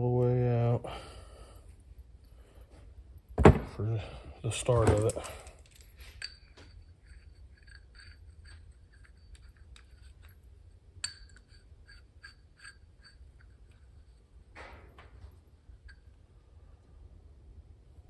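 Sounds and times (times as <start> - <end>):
metallic clinks of steel hardware: 4.7 - 6.8.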